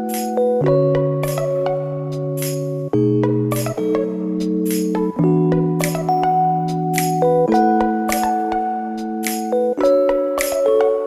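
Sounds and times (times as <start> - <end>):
light high percussion beat: 0.0 - 0.4, 3.5 - 10.7
sustained keyboard chords: 0.0 - 11.0.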